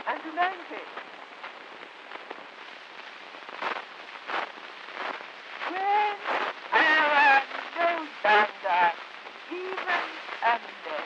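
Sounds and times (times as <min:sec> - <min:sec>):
faint distorted voice speaking: 0:00.0 - 0:01.0, 0:05.6 - 0:11.0
phonograph surface hiss and crackle: 0:00.0 - 0:11.0.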